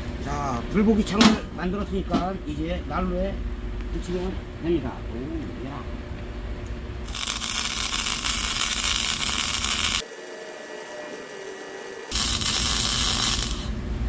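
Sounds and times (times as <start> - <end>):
arc welding crackling hiss: 7.0 - 13.8.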